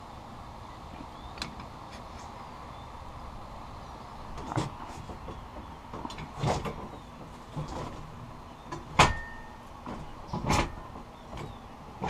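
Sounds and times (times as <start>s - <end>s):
metal bender clunks: 8.7s - 11.6s
metallic ring: 9.1s - 9.6s.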